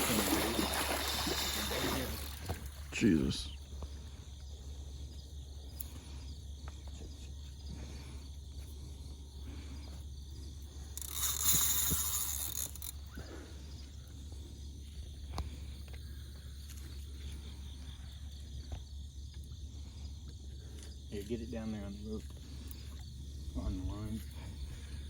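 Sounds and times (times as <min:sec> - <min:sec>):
high insect buzz: 0:00.0 - 0:06.6, 0:09.0 - 0:17.9.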